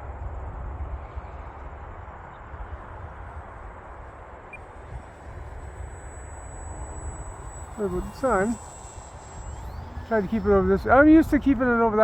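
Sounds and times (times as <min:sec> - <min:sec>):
wind buffeting microphone: 0:04.6 - 0:12.0.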